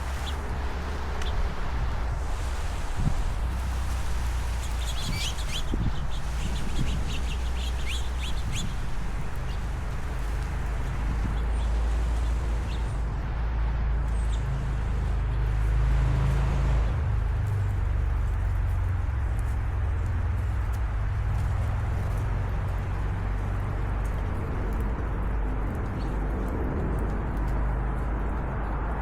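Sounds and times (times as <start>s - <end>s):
small birds chirping: 0.0s - 0.5s, 2.4s - 13.1s, 14.1s - 14.6s
low outdoor rumble: 0.0s - 29.0s.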